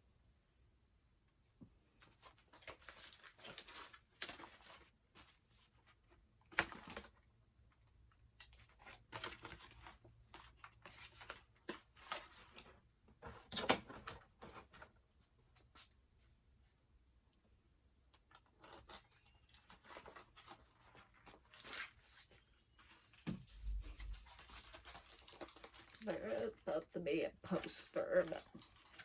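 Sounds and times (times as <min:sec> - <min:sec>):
packaging rustling and crinkling: 0:02.0 - 0:07.2, 0:18.3 - 0:26.4, 0:27.6 - 0:29.0.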